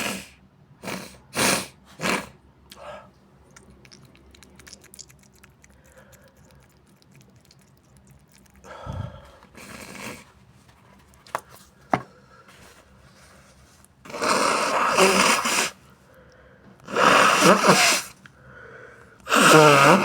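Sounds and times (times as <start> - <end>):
nose sniffing: 0.0 - 2.9, 3.9 - 10.3, 14.1 - 15.8, 16.8 - 18.2, 19.2 - 20.0
breathy blast through nose: 14.1 - 15.8, 16.9 - 20.0.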